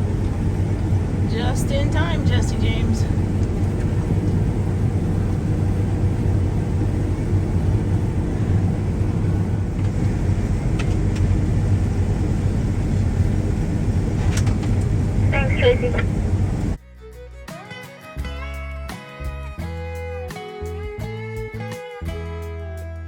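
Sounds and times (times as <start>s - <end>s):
combine harvester engine drone: 0.0s - 16.8s.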